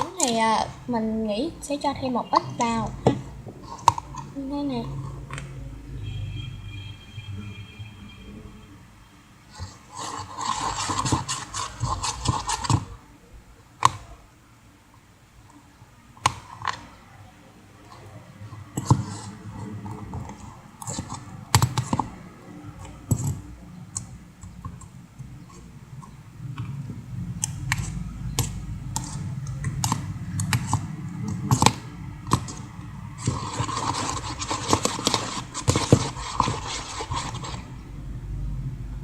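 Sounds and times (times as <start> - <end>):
stirrer scraping a container: 9.5 - 13.0, 18.6 - 22.2, 27.4 - 37.8.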